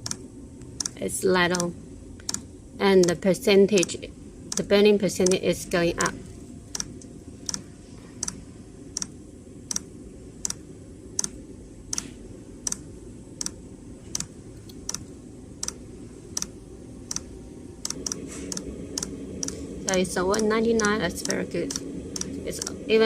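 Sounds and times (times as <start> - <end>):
heater fan hum: 0.0 - 23.0
fuel pump ticking: 20.3 - 22.8.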